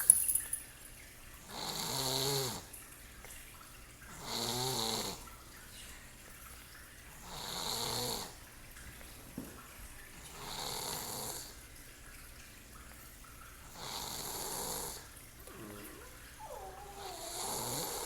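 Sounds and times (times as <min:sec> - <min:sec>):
person snoring: 0:13.8 - 0:18.0.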